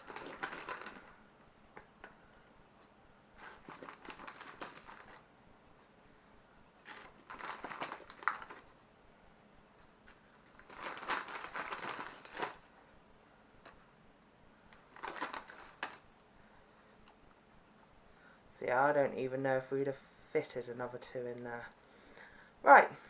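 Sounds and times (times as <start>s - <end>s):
plastic packaging crinkling: 0.0s - 2.1s, 3.4s - 5.3s, 6.8s - 8.7s, 10.0s - 12.7s, 14.7s - 16.1s.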